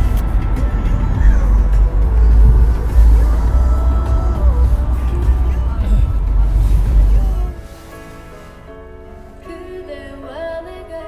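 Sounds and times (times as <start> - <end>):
low rumble: 0.0 - 7.7
instrumental music: 0.0 - 11.0.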